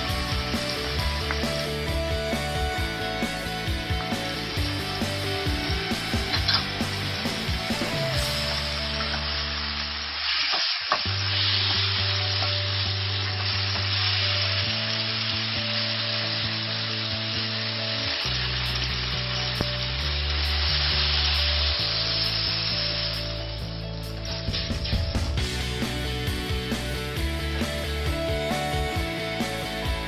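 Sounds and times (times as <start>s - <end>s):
soft background music: 0.0s - 10.3s, 11.1s - 30.0s
food sizzling in a pan: 0.0s - 19.7s.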